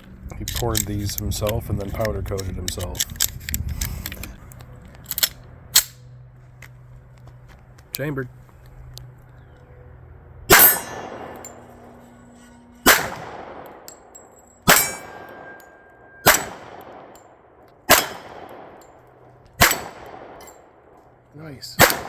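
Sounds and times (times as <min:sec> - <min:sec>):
pistol shots: 0:10.5 - 0:11.6, 0:12.8 - 0:13.9, 0:14.6 - 0:19.0, 0:19.6 - 0:20.9, 0:21.8 - 0:22.0
steel targets ringing: 0:10.5 - 0:20.9.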